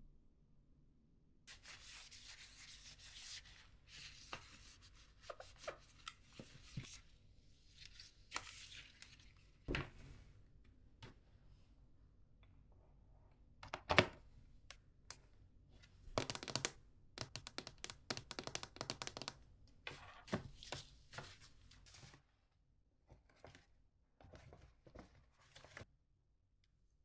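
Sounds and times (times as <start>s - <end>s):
handling rustles and scrapes: 23.1s - 25.9s.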